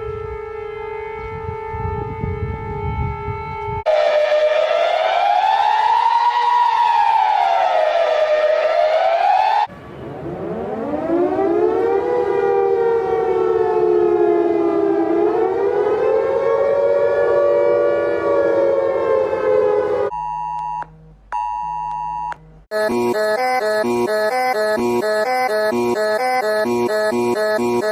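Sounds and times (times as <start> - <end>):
civil defense siren wavering: 0.0 - 20.1, 22.7 - 27.9
electronic alert tone: 22.7 - 27.9.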